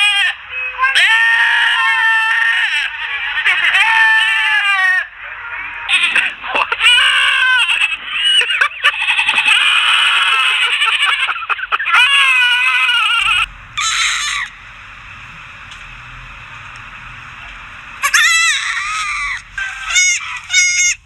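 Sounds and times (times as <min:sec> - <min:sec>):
goats bleating: 0:00.0 - 0:05.1, 0:05.9 - 0:14.6, 0:17.6 - 0:21.0.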